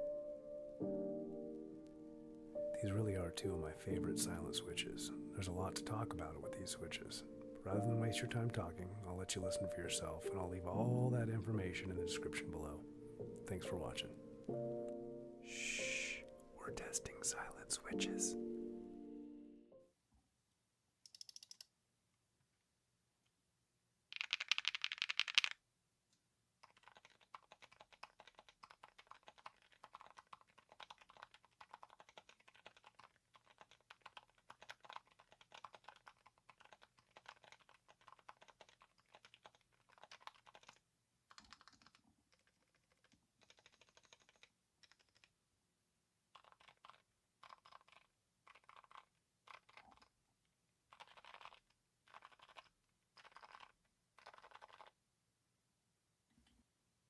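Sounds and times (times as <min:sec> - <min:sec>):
soft mechanical keyboard typing: 0:03.5 - 0:14.1, 0:16.6 - 0:18.3, 0:21.0 - 0:21.7, 0:24.2 - 0:25.6, 0:26.6 - 0:45.4, 0:46.3 - 0:50.2, 0:50.9 - 0:55.0.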